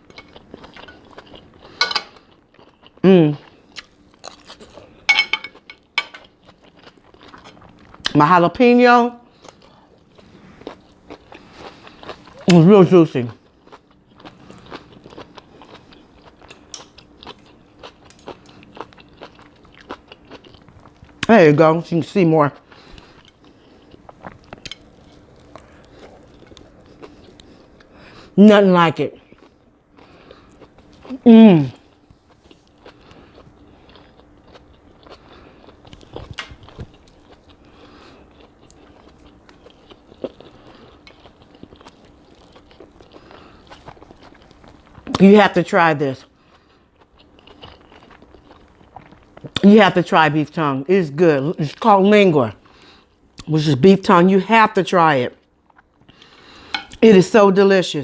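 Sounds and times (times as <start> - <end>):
person chewing food: 0.0 - 8.2, 9.3 - 12.6, 13.4 - 21.3, 22.6 - 28.4, 29.2 - 45.2, 46.2 - 49.6, 55.6 - 57.0.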